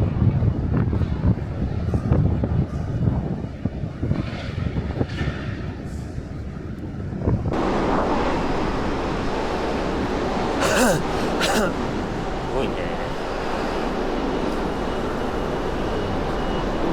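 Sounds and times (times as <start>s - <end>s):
wind buffeting microphone: 0.0s - 10.5s.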